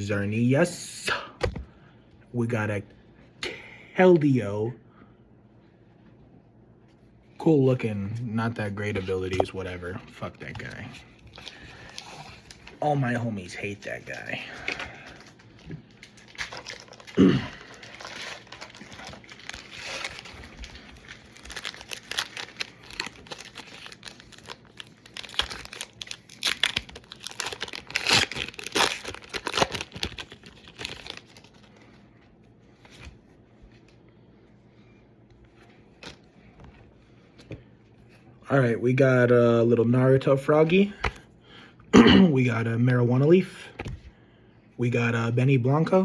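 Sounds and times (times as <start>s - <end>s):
foil wrappers crinkling and tearing: 13.6s - 31.9s.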